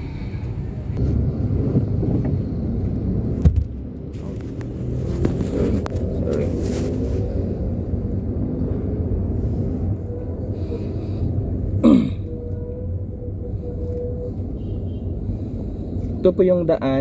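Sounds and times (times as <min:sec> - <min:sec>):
car engine rumble and road noise: 0:00.0 - 0:17.0
person coughing: 0:11.8 - 0:12.3.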